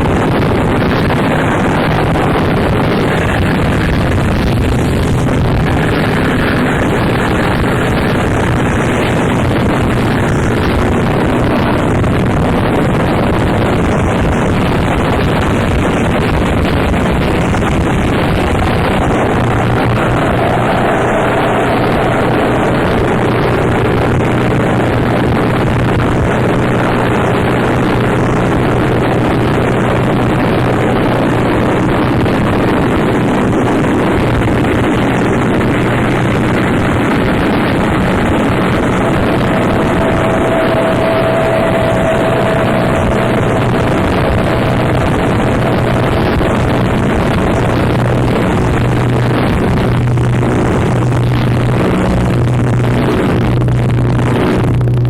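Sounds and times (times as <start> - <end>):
distorted static noise music: 0.0 - 55.0
low drone: 0.0 - 55.0.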